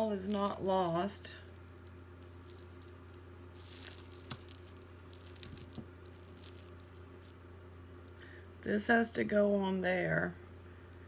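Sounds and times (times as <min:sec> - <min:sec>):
metal jewelry rustling: 0:00.0 - 0:08.4
steady low hum: 0:00.0 - 0:11.0
metal jewelry clicks: 0:00.3 - 0:07.4.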